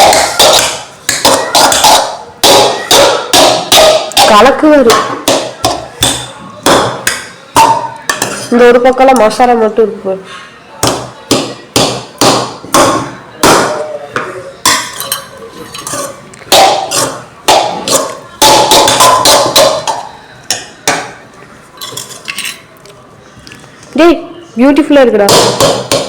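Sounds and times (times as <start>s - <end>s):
metal spoon knocking on pot: 0.0s - 8.5s, 14.6s - 21.2s
spoon scraping pot: 8.1s - 9.3s, 14.7s - 20.7s, 21.8s - 22.7s.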